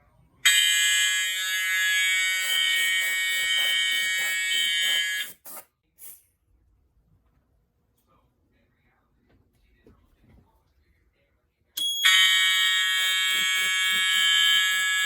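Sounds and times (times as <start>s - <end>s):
fire alarm horn steady tone: 0.4s - 5.4s, 11.8s - 15.0s
rapid pulsing alarm: 0.5s - 5.3s, 11.8s - 15.0s.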